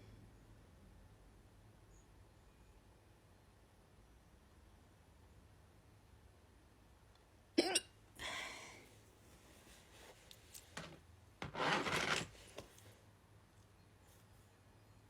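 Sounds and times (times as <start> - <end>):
person hiccuping: 7.6 - 7.9.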